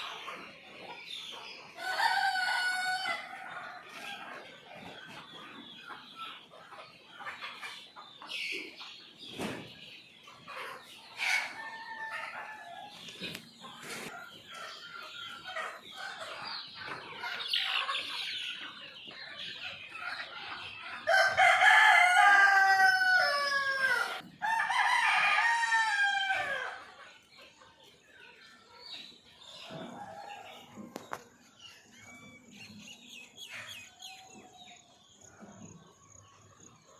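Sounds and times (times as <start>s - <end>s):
chickens clucking: 0.0s - 36.9s
rooster crowing: 21.1s - 26.8s.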